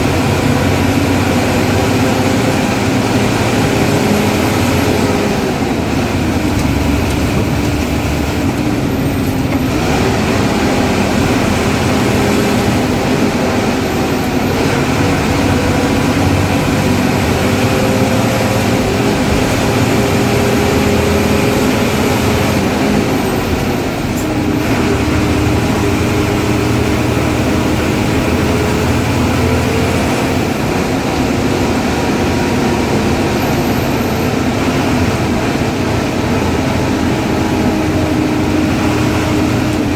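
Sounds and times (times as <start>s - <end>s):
bus diesel engine running: 0.0s - 39.9s
turbocharger whistle: 32.8s - 34.6s.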